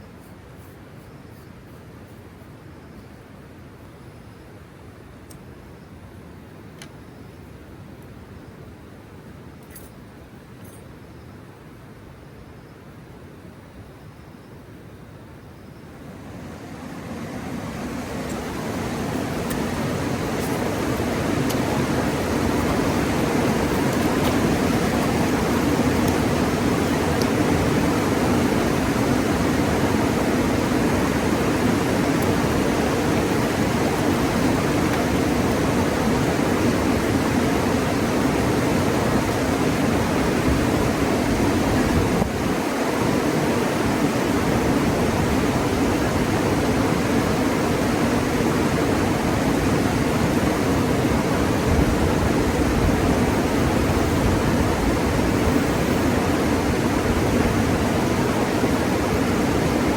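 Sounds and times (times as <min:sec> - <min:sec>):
river water rushing: 0:16.0 - 0:59.9.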